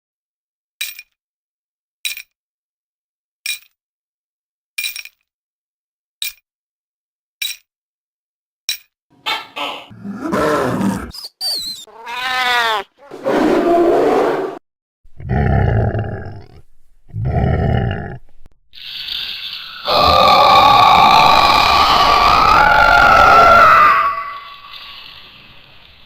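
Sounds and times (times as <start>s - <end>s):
low growling monster roars: 9.9s - 11.1s, 15.2s - 18.2s, 19.8s - 24.7s
cartoon squeaks: 11.0s - 13.2s.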